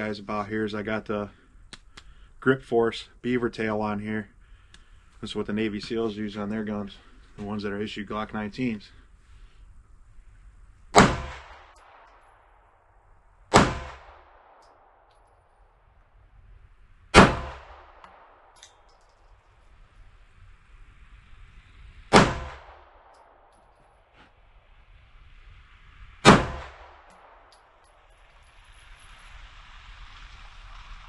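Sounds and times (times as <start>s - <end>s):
pistol shots: 10.9s - 12.3s, 13.5s - 14.9s, 17.1s - 18.9s, 22.1s - 23.5s, 26.2s - 27.7s.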